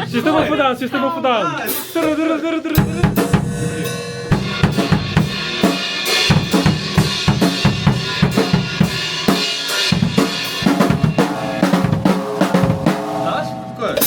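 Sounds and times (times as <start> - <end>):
kick and snare drum beat: 2.8 - 14.0
rock music: 2.8 - 14.0.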